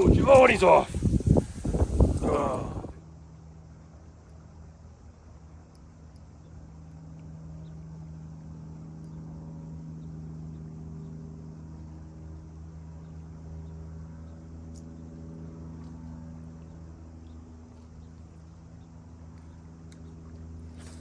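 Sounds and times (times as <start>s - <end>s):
faint ticks: 5.6s - 6.4s.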